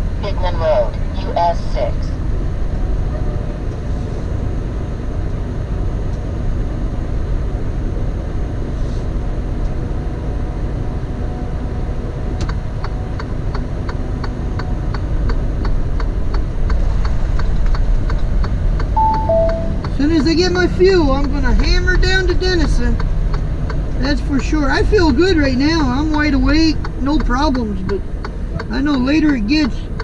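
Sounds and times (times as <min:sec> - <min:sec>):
diesel engine and road drone: 0:00.0 - 0:30.0
turn signal ticking: 0:12.4 - 0:30.0.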